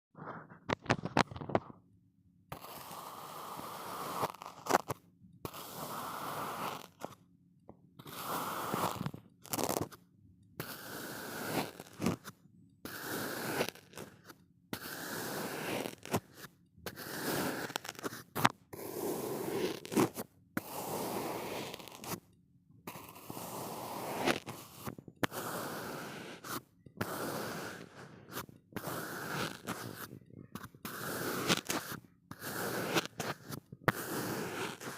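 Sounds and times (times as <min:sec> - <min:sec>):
sand crunching and scraping: 0:19.0 - 0:22.2, 0:23.1 - 0:34.9.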